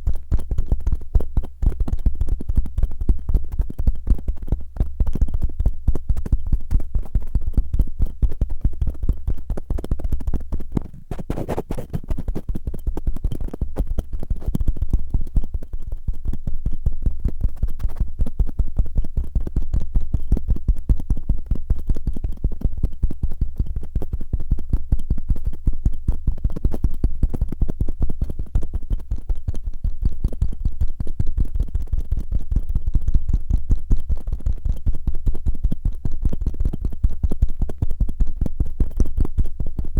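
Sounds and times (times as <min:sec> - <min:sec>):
cotton swab scratching microphone: 0:00.1 - 0:15.6.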